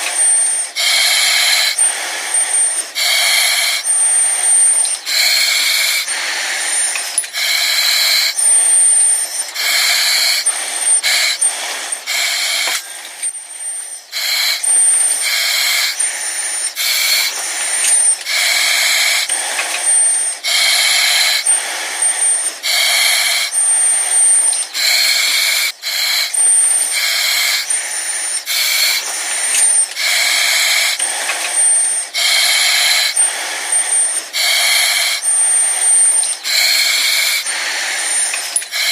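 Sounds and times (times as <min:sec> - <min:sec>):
breathing through oxygen mask: 0:00.0 - 0:38.9.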